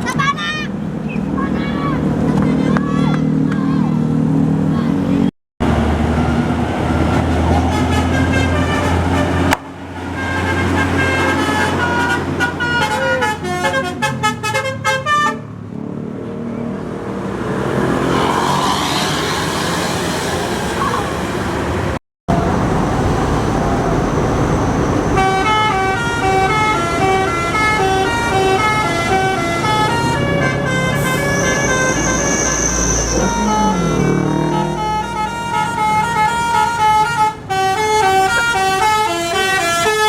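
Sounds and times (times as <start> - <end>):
bus engine and tyre noise: 0.0 - 40.0
bus horn melodies: 7.5 - 15.6, 25.0 - 40.0.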